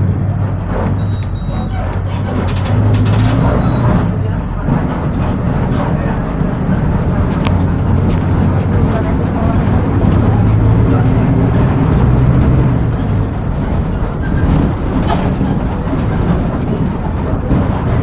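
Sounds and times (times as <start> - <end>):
bus diesel engine humming: 0.0 - 18.0
clattering rattles: 0.4 - 10.8.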